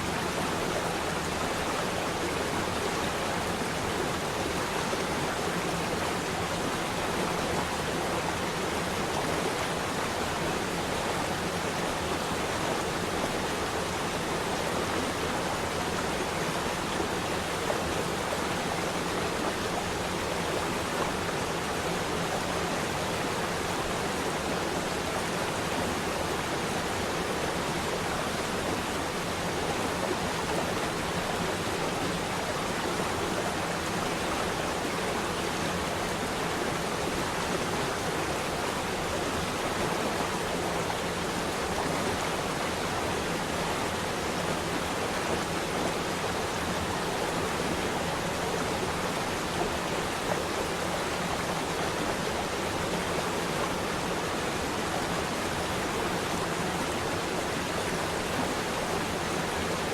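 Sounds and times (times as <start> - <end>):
flowing water rushing: 0.0 - 59.9.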